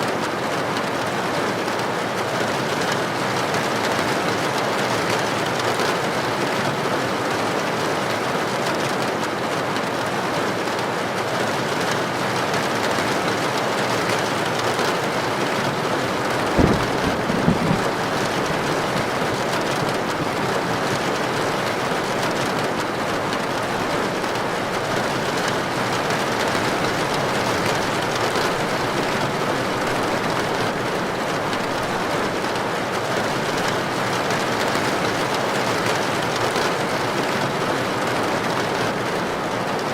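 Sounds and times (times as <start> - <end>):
heavy rain on a tin roof: 0.0 - 39.9
thunder thump: 16.3 - 19.9.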